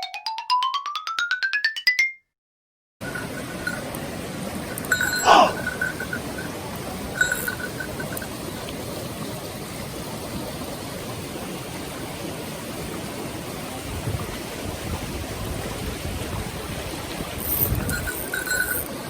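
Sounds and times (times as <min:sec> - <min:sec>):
stream splashing over rocks: 0:05.9 - 0:17.4.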